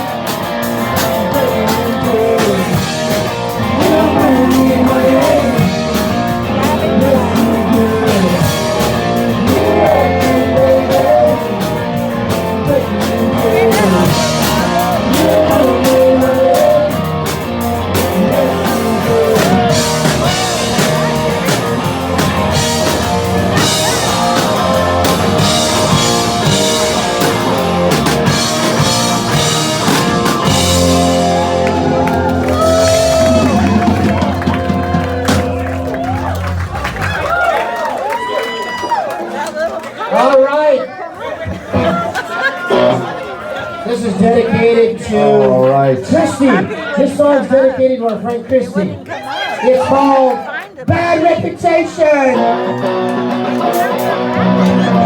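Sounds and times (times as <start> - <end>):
guitar: 0.0 - 37.4, 41.4 - 50.0, 50.9 - 55.0
drum kit: 0.0 - 37.8, 52.4 - 55.0
bass guitar: 0.0 - 38.0, 50.9 - 55.0
person singing: 0.8 - 36.4, 51.1 - 55.0.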